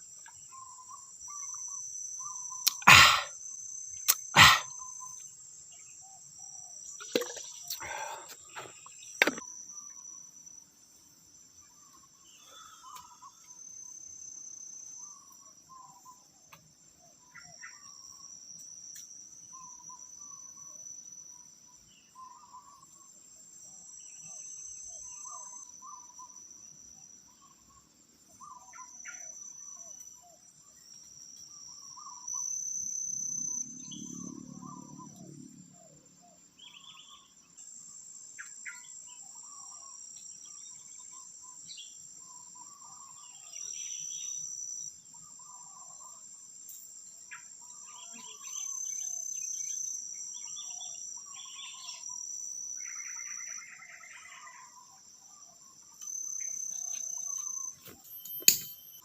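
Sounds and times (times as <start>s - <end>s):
insects droning: 0.0s - 59.0s
birds calling: 4.1s - 5.1s, 7.0s - 9.4s.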